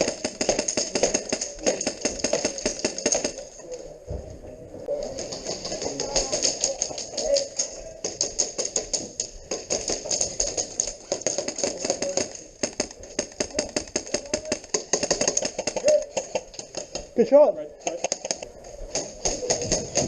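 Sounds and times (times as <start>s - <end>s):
airsoft guns firing: 0.0s - 3.5s, 5.0s - 17.2s
faint voices: 0.0s - 20.0s.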